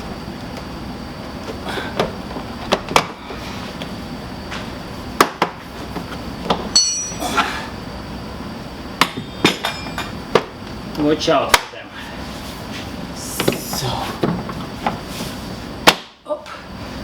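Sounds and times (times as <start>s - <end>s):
short metallic ring: 6.8s - 7.3s, 9.2s - 10.1s.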